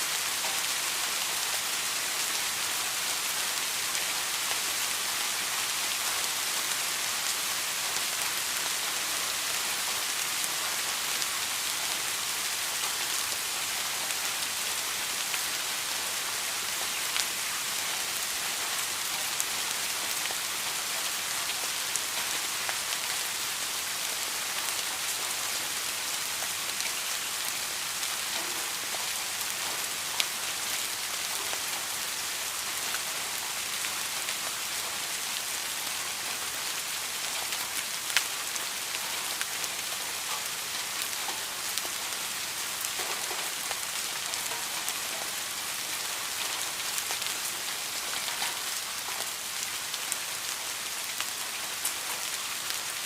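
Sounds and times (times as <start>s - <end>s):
steady rain hiss: 0.0s - 53.0s.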